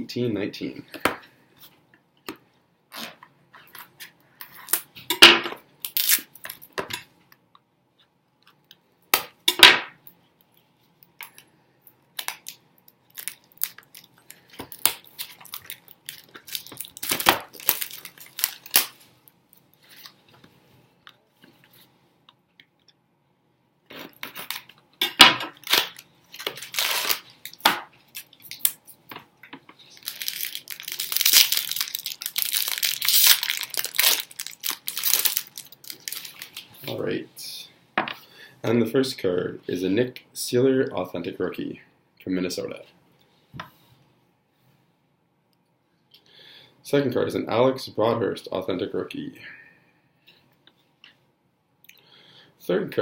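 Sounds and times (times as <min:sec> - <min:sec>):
wrapper crinkling: 0:12.2 - 0:19.1, 0:25.5 - 0:28.8, 0:29.8 - 0:36.8.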